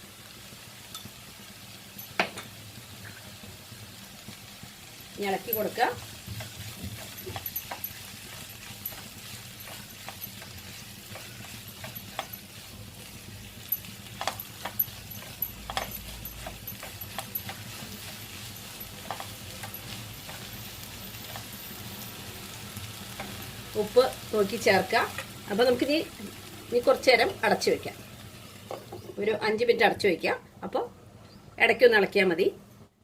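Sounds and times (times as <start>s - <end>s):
soft sizzle: 0.0s - 32.9s
spatula tapping and scraping pan: 5.5s - 12.8s, 13.5s - 21.7s.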